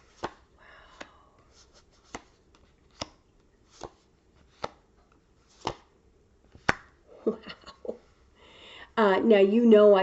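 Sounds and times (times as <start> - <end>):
cards dealt onto a table: 0.0 - 5.9.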